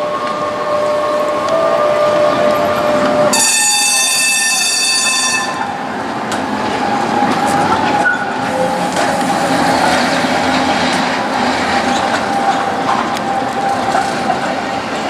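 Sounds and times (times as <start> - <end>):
tram wheels rumbling on track: 0.0 - 15.0
tram whine: 0.0 - 15.0.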